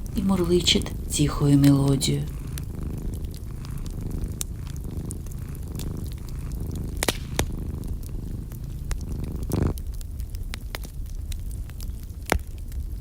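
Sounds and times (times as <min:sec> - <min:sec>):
cat purring: 0:00.0 - 0:13.0
wood fire crackling: 0:00.0 - 0:13.0.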